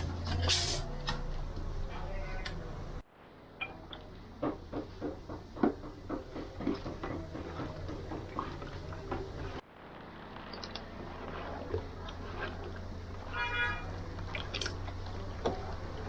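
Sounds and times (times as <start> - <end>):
knocks and clatters: 4.3 - 9.6
low hum: 7.0 - 16.0.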